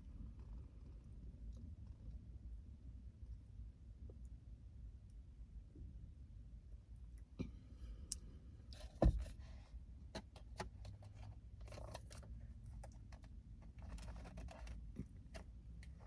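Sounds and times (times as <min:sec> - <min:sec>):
loud thump: 0:09.0 - 0:09.3.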